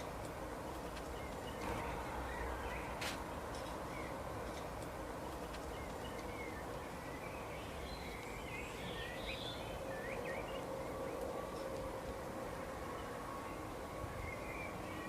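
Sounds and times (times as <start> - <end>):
small birds chirping: 0.0 - 11.7
steady background hiss: 0.0 - 15.0.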